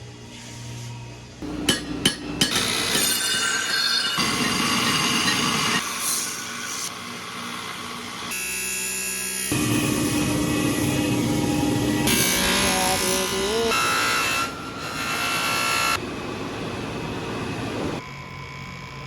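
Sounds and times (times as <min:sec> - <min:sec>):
power tools whirring: 0:04.2 - 0:18.0.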